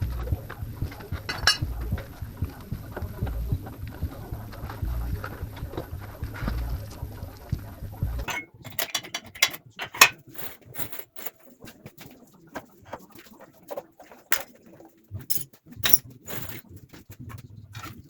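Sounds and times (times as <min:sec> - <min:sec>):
metallic clicks of hand tools: 0:08.3 - 0:11.4, 0:15.3 - 0:16.6.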